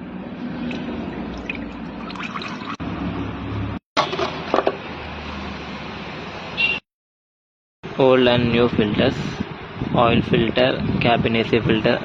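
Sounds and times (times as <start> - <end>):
fluid pouring trickle: 0.6 - 2.8.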